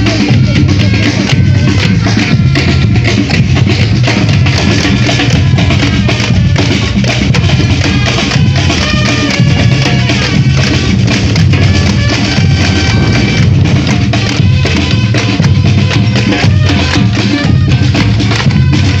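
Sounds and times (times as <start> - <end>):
deep bass drums pulsing: 0.0 - 19.0
percussion band drumming: 0.0 - 19.0
wood-block strokes: 0.0 - 19.0.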